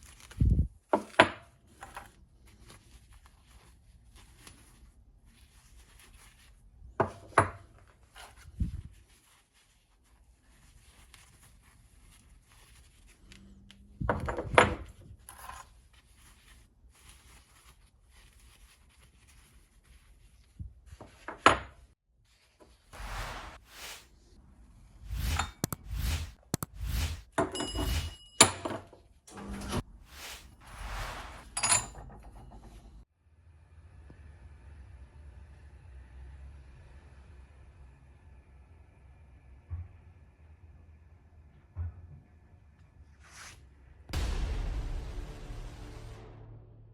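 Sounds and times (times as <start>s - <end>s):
metallic ring: 27.5s - 28.7s.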